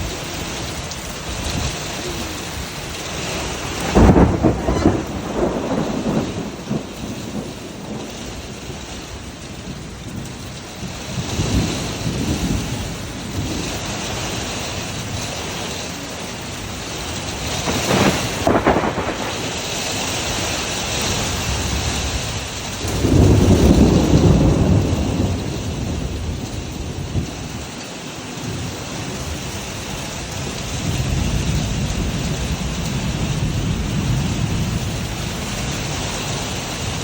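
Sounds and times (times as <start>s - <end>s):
deep rumbling surges: 0.0s - 9.4s, 16.4s - 27.6s
heavy rain falling: 0.0s - 37.0s.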